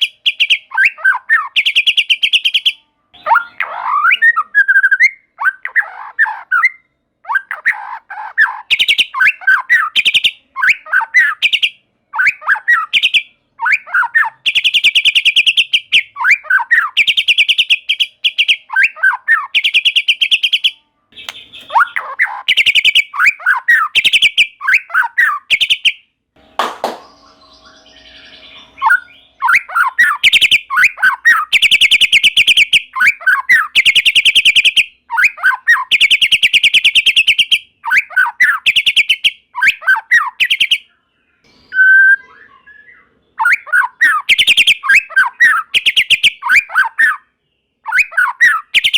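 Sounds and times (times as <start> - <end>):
bird singing whistled phrases: 0.0 - 26.0, 27.0 - 47.2, 47.8 - 48.9
bird rattling trills: 21.2 - 23.0.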